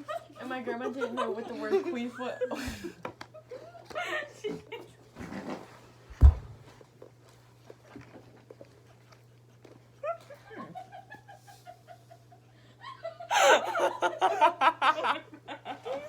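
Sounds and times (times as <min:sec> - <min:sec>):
sharp thump: 0:06.1 - 0:06.7
people laughing loudly: 0:12.8 - 0:16.0.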